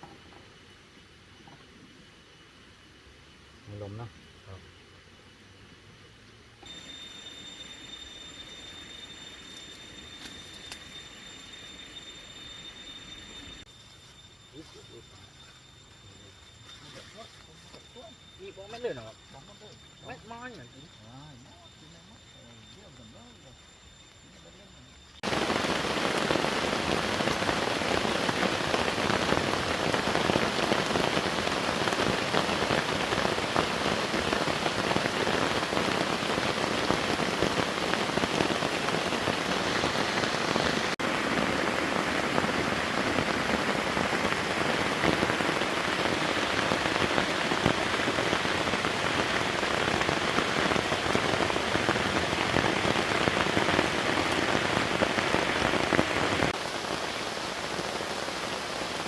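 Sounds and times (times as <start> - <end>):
heavy rain pouring: 25.2 - 59.0.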